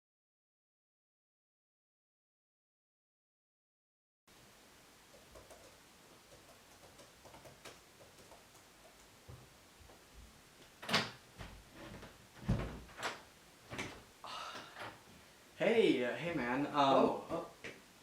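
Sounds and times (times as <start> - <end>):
knocks and thumps: 10.8 - 14.0.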